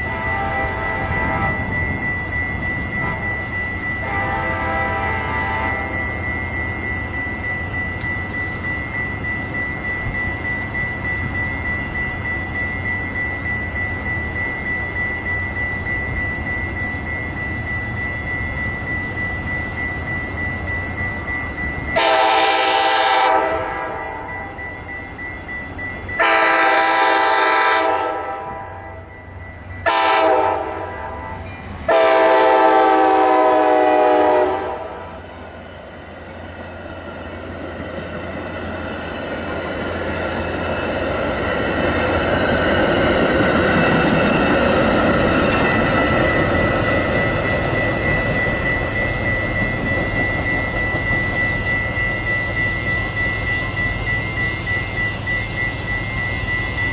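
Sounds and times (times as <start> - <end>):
locomotive air horn: 0.0 - 1.7, 4.0 - 6.0, 22.0 - 24.3, 26.2 - 29.0, 29.8 - 35.2
thin high tone: 0.0 - 27.2, 27.8 - 56.9
train rumbling: 0.0 - 56.9.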